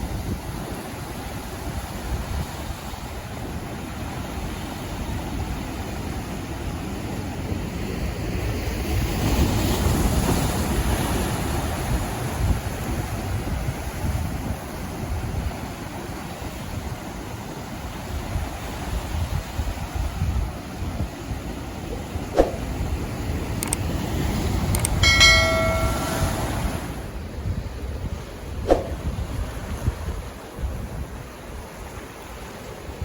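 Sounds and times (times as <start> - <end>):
wind buffeting microphone: 19.3 - 31.7
ocean waves washing in: 24.8 - 27.1.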